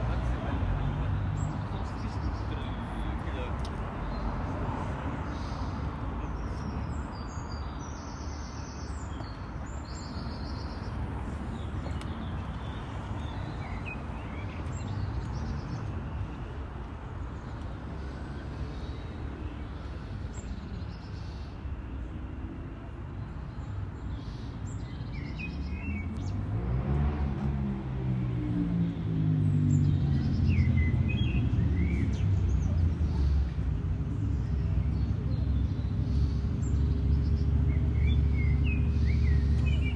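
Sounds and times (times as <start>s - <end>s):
birds chirping: 0.0s - 22.1s, 23.2s - 39.9s
traffic rumble: 0.0s - 39.9s
vehicle engine approaching: 26.0s - 39.9s.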